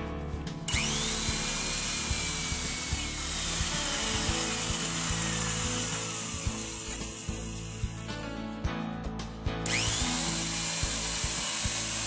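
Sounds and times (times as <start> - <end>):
hole saw cutting into wood: 0.7 - 8.0, 9.7 - 12.0
drill whine: 0.7 - 8.1, 9.6 - 12.0.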